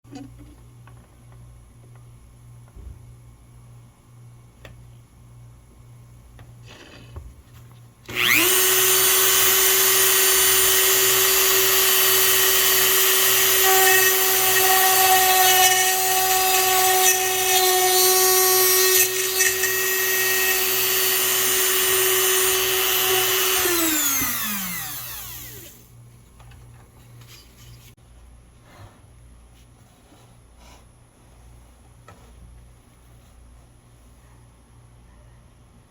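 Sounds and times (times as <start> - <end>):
rotary tool whining while drilling: 8.1 - 25.8.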